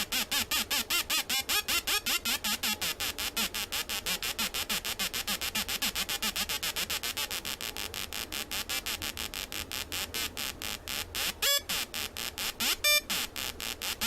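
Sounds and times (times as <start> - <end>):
buzzy pulsing synth tone: 0.0 - 14.0.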